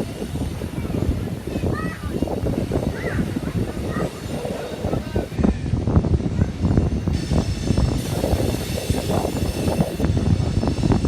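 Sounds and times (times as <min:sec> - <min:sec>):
train rumbling: 0:00.0 - 0:11.0
wheels clacking on rail: 0:00.0 - 0:11.0.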